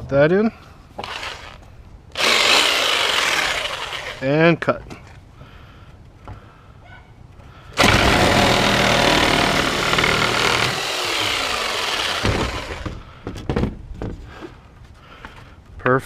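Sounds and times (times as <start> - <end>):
electric saw cutting wood: 1.0 - 1.6, 2.2 - 4.2, 7.8 - 13.0.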